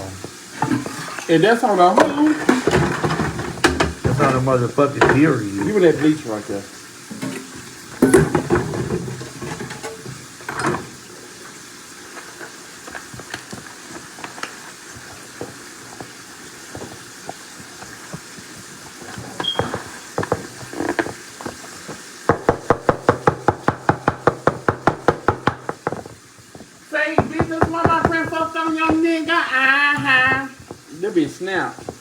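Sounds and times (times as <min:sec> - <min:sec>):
faint steady hiss: 0:00.0 - 0:32.0
kitchen clatter: 0:00.0 - 0:32.0
fast run of sharp knocks: 0:19.7 - 0:29.3.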